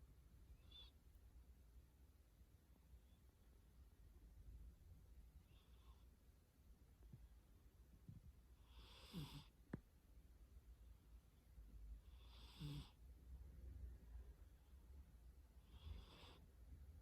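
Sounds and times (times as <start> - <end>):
cat snoring: 8.6 - 9.6, 12.0 - 13.0, 15.6 - 16.4.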